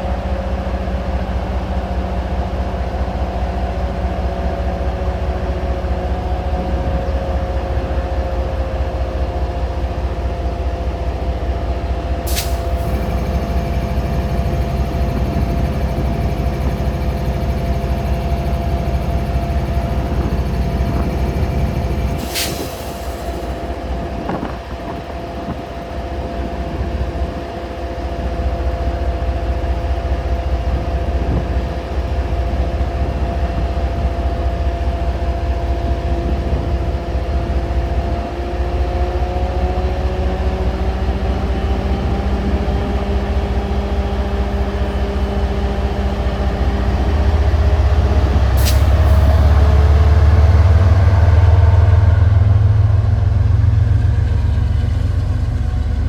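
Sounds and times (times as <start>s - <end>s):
train machinery humming: 0.0s - 56.0s
low rumble: 12.6s - 25.8s, 46.7s - 56.0s.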